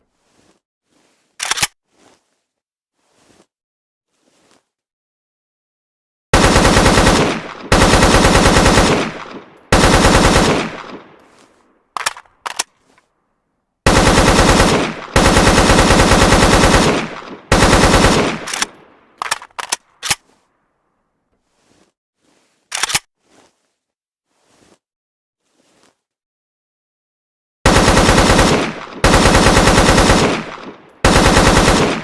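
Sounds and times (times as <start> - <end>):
automatic rifle bursts with echo: 6.4 - 11.2, 13.9 - 18.7, 27.7 - 32.0
single gunshots: 7.0 - 11.2, 16.6 - 18.8, 28.4 - 32.0.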